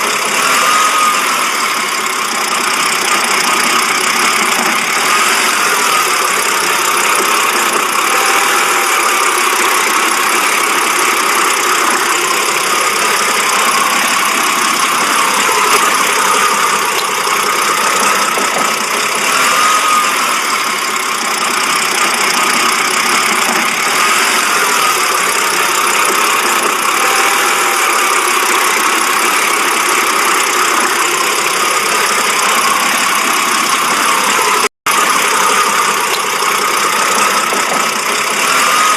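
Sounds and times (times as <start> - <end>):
car engine idling rough: 0.0 - 38.9.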